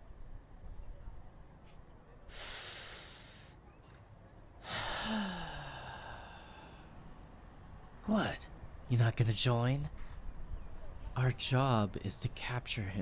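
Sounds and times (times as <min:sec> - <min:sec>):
person sighing: 0:02.3 - 0:03.5, 0:04.6 - 0:06.7.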